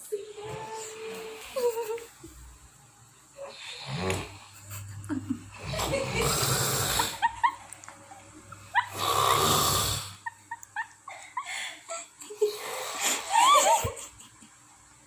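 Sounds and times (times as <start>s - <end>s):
person snoring with rasping breaths: 3.4s - 4.6s, 5.5s - 7.2s, 8.9s - 10.2s, 12.4s - 13.4s.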